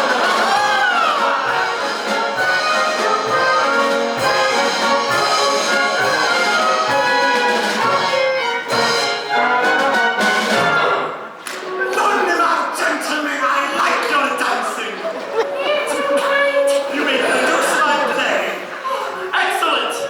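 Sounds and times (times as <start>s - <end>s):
brass band music: 0.0s - 13.6s.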